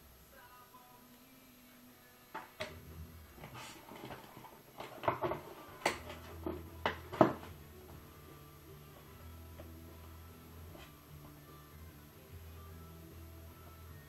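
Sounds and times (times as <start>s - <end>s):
box being handled with knocks: 4.1s - 7.6s.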